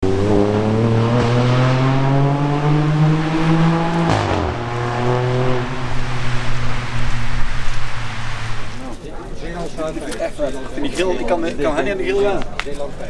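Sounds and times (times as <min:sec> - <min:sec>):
car engine revving: 0:00.0 - 0:08.9
exhaust crack: 0:00.0 - 0:09.0.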